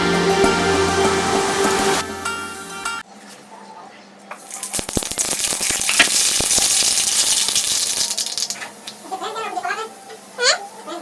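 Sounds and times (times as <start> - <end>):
hot oil sizzling in a pan: 4.4 - 9.0
oil crackling: 4.4 - 9.0.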